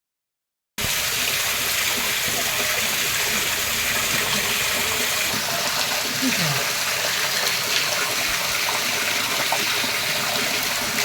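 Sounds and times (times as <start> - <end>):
water rushing: 0.8 - 11.0.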